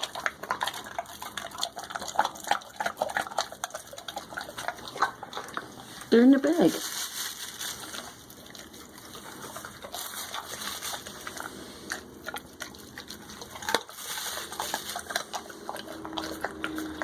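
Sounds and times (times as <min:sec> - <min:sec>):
dog chewing wetly: 0:00.0 - 0:17.0
bone crunching: 0:07.6 - 0:17.0.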